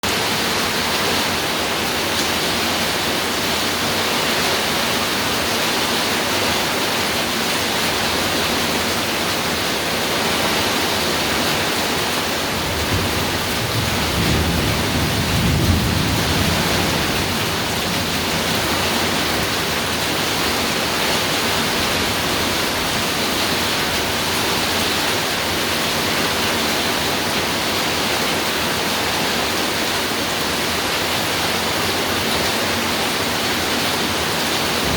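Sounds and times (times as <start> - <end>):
heavy rain on a roof: 0.0 - 34.9
low rumble of thunder: 12.5 - 24.2.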